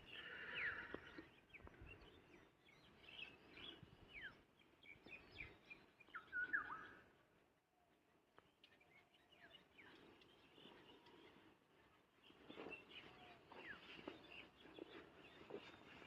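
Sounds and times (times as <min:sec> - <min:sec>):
birds chirping and whistling: 0:00.0 - 0:07.0.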